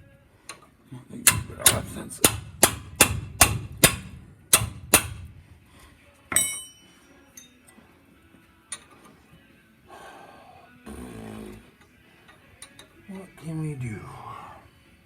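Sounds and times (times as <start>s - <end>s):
hammer striking metal: 1.2s - 5.7s, 6.3s - 7.5s
ringing metallic clang: 1.2s - 7.7s.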